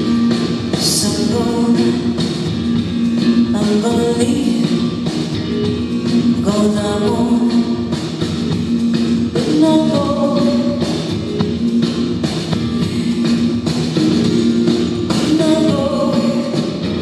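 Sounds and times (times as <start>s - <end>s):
guitar-led band playing: 0.0s - 17.0s
person singing long notes: 0.8s - 2.3s, 6.4s - 8.0s, 9.4s - 11.2s, 14.3s - 17.0s.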